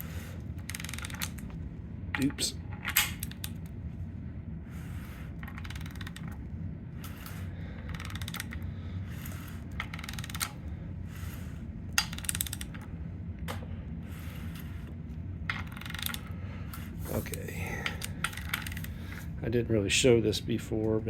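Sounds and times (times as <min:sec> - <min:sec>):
gear set clicking and rattling: 0:07.2 - 0:08.6, 0:09.2 - 0:10.6, 0:17.8 - 0:19.2.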